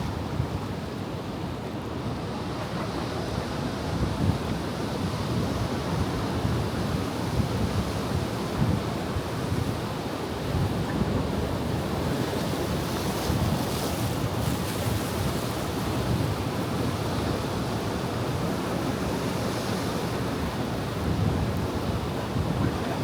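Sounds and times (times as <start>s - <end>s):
ocean surf on shore: 8.4s - 23.0s.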